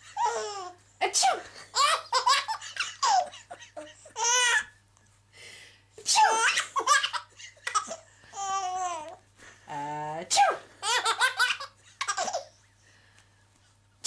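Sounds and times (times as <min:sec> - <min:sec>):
baby laughing: 0:00.2 - 0:00.8, 0:01.7 - 0:04.7, 0:06.2 - 0:09.1, 0:10.8 - 0:12.5
woman sneezing: 0:06.1 - 0:06.4.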